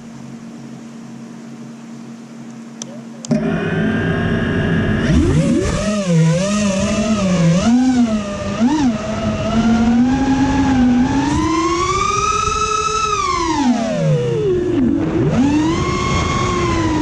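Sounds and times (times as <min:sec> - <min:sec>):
drone motors whining: 0:00.0 - 0:17.0.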